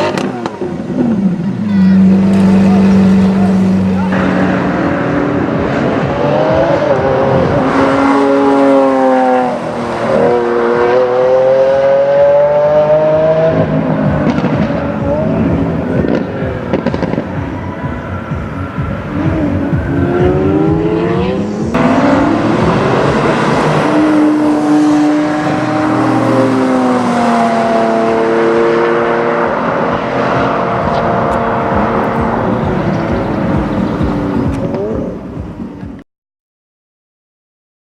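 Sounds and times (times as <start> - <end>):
sports car engine accelerating: 0.0 - 36.0
exhaust popping crackles: 14.0 - 23.8.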